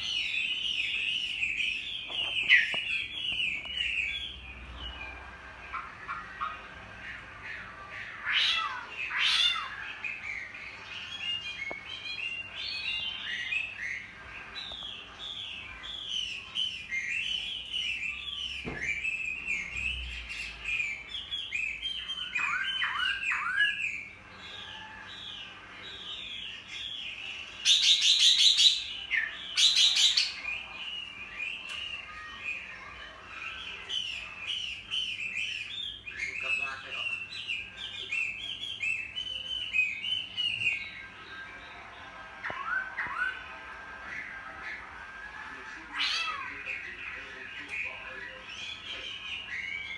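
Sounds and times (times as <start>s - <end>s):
bird whistled song: 0.0s - 5.3s, 9.9s - 25.4s, 26.0s - 32.9s, 33.5s - 41.2s, 47.8s - 49.9s.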